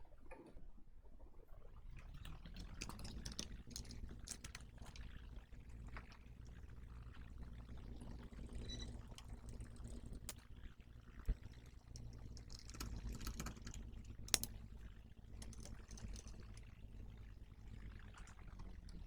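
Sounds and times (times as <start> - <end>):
small clicks and rattles: 1.8 - 19.0
steady low hum: 1.9 - 19.0.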